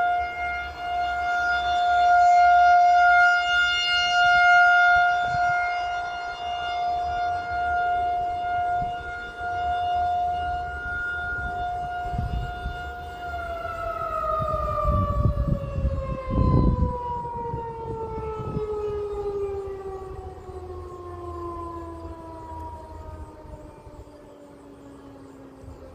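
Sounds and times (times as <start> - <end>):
warning siren wailing: 0.0 - 25.9
low rumbling noise: 10.4 - 25.9.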